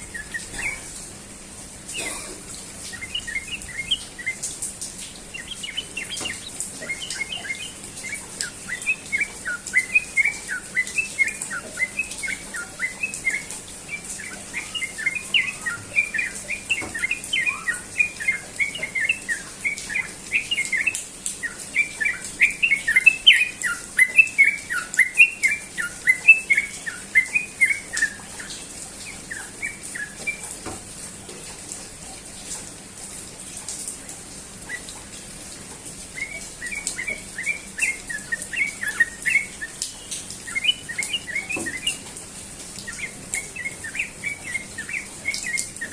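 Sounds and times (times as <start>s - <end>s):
bird singing fast chirps: 0.0s - 0.9s, 2.8s - 4.5s, 5.3s - 30.5s, 36.2s - 42.0s, 42.8s - 45.9s.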